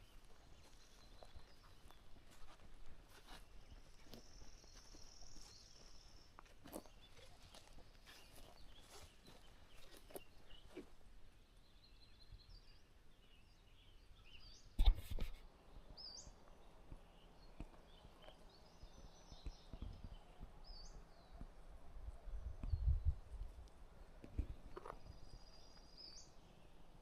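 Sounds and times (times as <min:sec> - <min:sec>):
faint outdoor background noise: 0:00.0 - 0:27.0
small birds chirping: 0:00.0 - 0:27.0.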